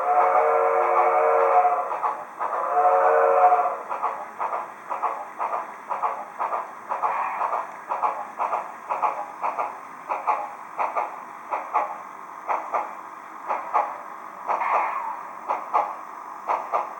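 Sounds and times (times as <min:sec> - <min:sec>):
model train chime whistle: 0:00.0 - 0:02.0, 0:02.6 - 0:03.9
steam exhaust chuffing: 0:00.0 - 0:16.9.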